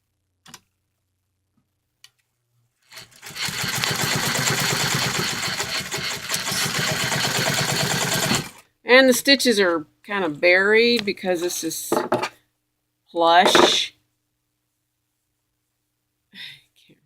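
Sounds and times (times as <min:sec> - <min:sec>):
sewing machine stitching: 0:02.9 - 0:08.6.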